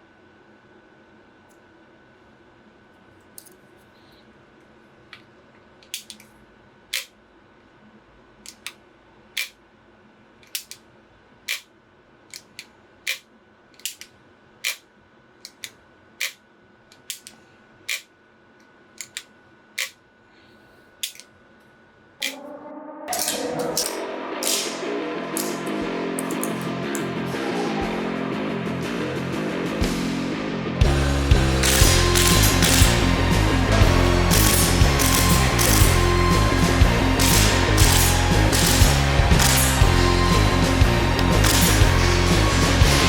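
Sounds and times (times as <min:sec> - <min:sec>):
airsoft rifle trigger clicking: 0:31.6 - 0:33.0, 0:34.3 - 0:36.0, 0:37.2 - 0:39.8.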